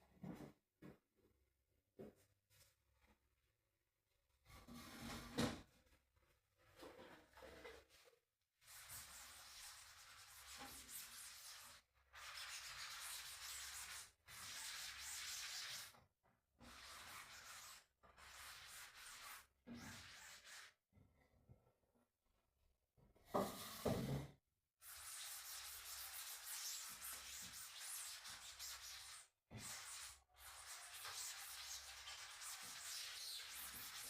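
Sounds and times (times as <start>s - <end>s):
rubbing and scrubbing: 8.6s - 16.0s, 16.6s - 20.8s, 24.8s - 34.0s.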